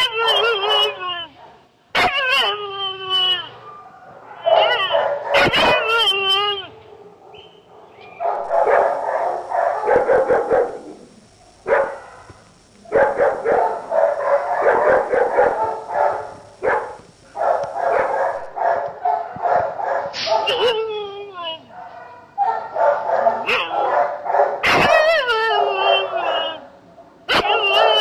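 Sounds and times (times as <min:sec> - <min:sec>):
dog barking and yipping: 0:02.0 - 0:02.6, 0:04.3 - 0:10.8, 0:11.7 - 0:12.3, 0:12.9 - 0:20.8, 0:21.8 - 0:26.6, 0:27.3 - 0:28.0.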